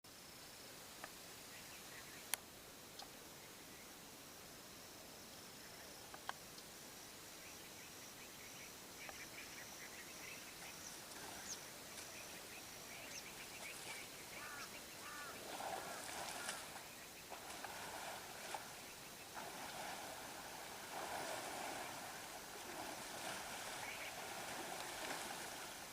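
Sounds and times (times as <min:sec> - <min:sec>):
outdoor ambience hiss: 0:00.0 - 0:25.9
birds chirping and trilling: 0:07.5 - 0:18.1, 0:23.5 - 0:24.8.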